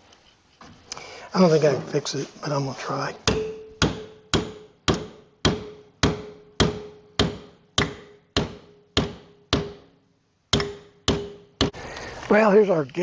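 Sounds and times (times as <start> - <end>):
hammer striking metal bar: 3.2 - 11.8.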